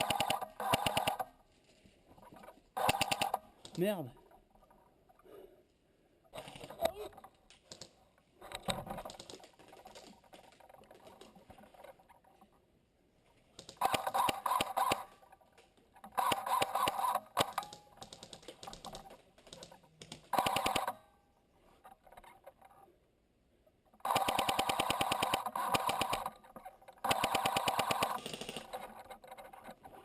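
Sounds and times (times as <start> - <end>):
airsoft gun full-auto bursts: 0.0 - 1.3, 2.8 - 3.4, 13.8 - 15.1, 20.3 - 21.0, 24.0 - 26.4, 27.0 - 28.8.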